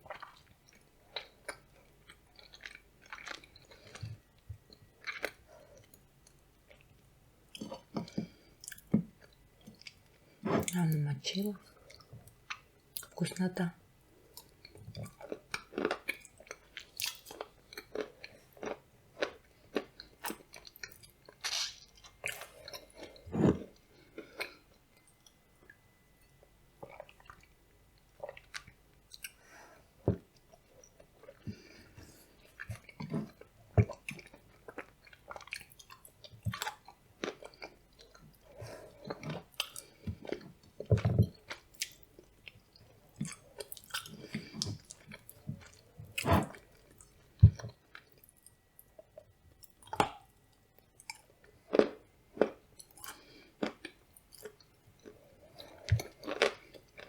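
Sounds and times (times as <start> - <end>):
crisp chewing crunches: 14.4 - 25.2, 51.0 - 57.0.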